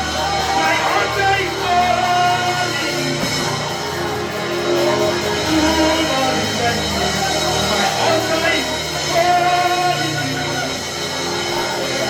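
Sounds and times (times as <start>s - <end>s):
live gospel music with band: 0.0s - 12.0s.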